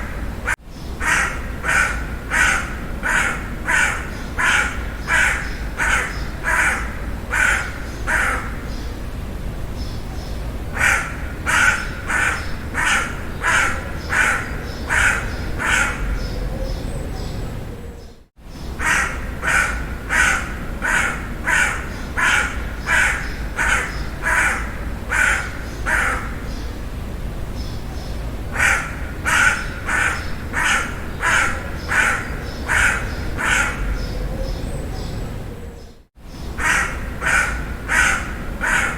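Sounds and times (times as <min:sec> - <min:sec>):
crow cawing: 0:00.0 - 0:08.7, 0:10.7 - 0:16.2, 0:18.8 - 0:26.6, 0:28.5 - 0:34.1, 0:36.6 - 0:38.9.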